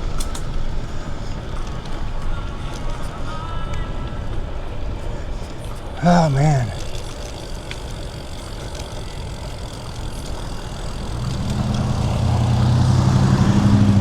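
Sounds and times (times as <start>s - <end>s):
bicycle riding noise: 0.0s - 14.0s
motor engine hum: 6.0s - 14.0s.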